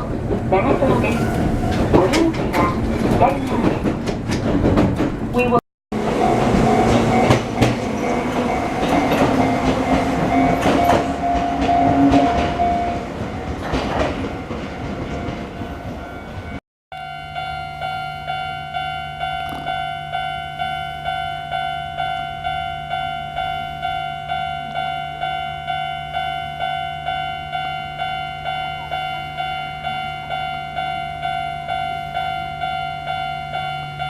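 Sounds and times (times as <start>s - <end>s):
train wheels clicking on rail joints: 0.0s - 16.6s, 19.3s - 19.9s
train whine: 0.0s - 34.0s.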